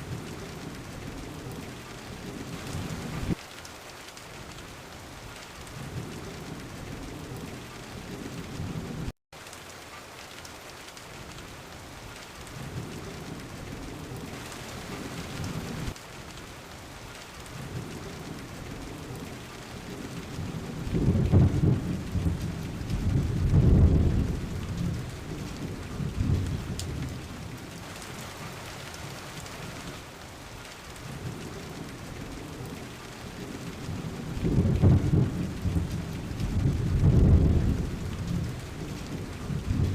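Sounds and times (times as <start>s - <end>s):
steady rain: 0.0s - 39.9s
rolling thunder: 17.6s - 27.4s, 33.4s - 39.9s.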